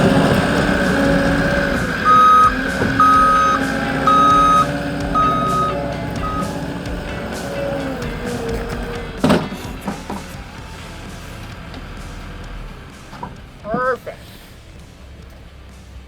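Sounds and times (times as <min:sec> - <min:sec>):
backup alarm beeping: 0:00.0 - 0:10.4
machine engine running: 0:00.0 - 0:16.0.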